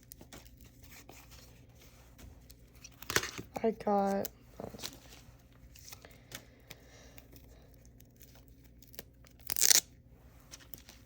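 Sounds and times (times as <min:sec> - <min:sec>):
package ripping open: 0:07.9 - 0:10.0.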